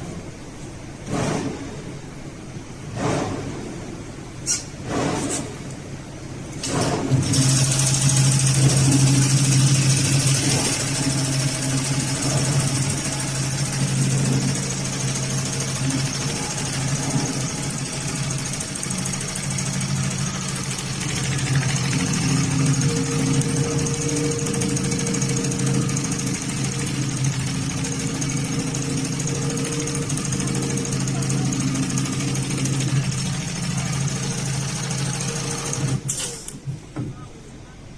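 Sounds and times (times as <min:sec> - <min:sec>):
sewing machine running: 0:06.6 - 0:36.2.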